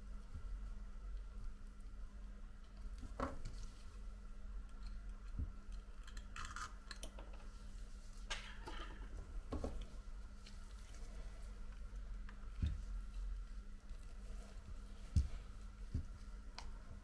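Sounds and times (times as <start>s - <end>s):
low electrical hum: 0.0s - 17.0s.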